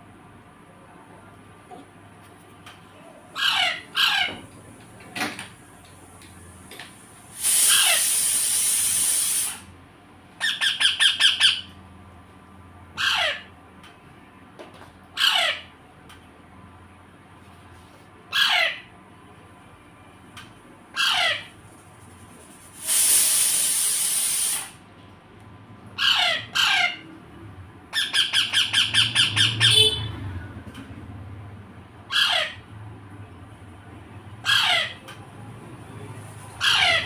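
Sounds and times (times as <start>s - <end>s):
parrot squawking: 3.3s - 4.4s, 7.5s - 8.3s, 10.4s - 11.8s, 13.0s - 13.5s, 15.2s - 15.7s, 18.3s - 18.9s, 20.9s - 21.6s, 26.0s - 27.1s, 27.9s - 30.1s, 32.0s - 32.7s, 34.4s - 35.1s, 36.6s - 37.0s
parrot hissing rasp: 7.3s - 9.7s, 22.6s - 24.8s.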